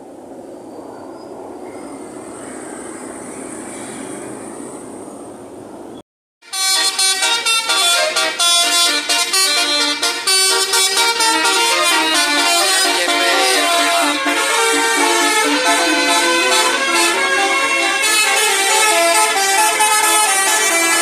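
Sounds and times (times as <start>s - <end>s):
street traffic: 0.0s - 21.0s
musical air horn melody: 6.4s - 21.0s.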